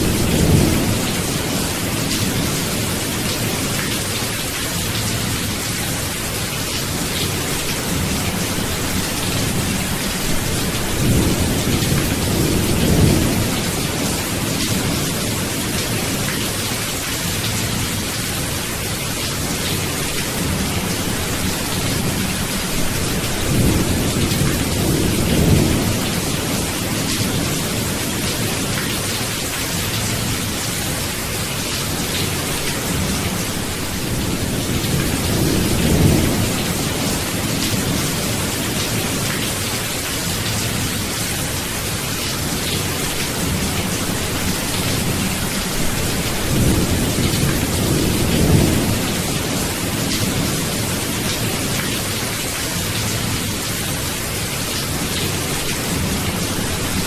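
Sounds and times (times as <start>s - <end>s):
low rolling thunder: 0.0s - 3.6s, 7.3s - 16.2s, 20.4s - 28.8s, 32.9s - 39.2s, 43.4s - 51.7s
heavy rain: 0.0s - 57.0s.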